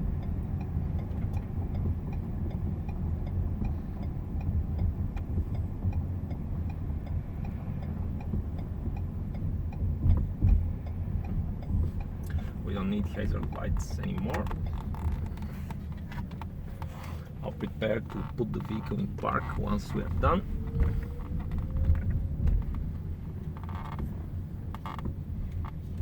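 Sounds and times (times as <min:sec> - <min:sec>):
hazard flasher relay ticking: 0:00.0 - 0:16.6
road and tyre rumble: 0:00.0 - 0:26.0.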